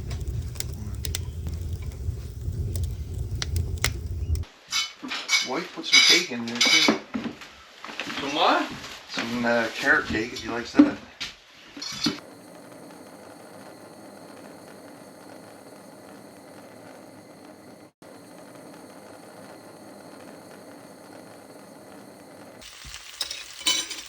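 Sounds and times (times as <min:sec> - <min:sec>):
steady hiss: 0:00.0 - 0:04.7, 0:12.2 - 0:24.0.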